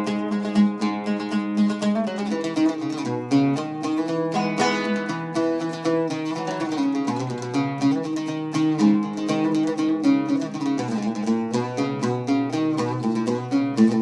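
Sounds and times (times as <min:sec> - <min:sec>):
plucked string instrument music: 0:00.0 - 0:14.0.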